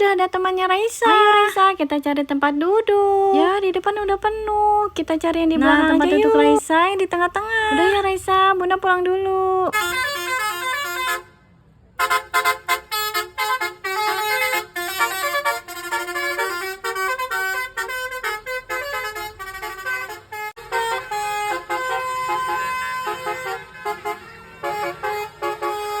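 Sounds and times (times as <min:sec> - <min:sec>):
bus musical horn melodies: 0:09.7 - 0:26.0.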